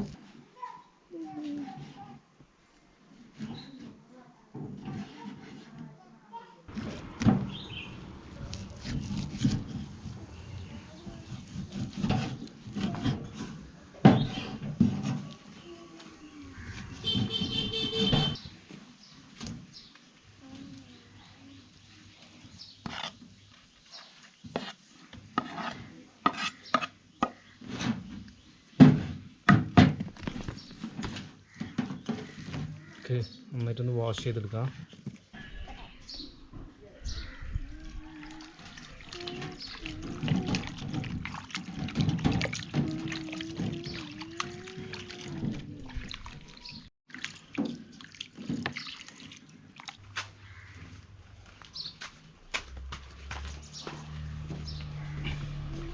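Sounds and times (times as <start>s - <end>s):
water splashing and dripping: 37.7s - 55.9s.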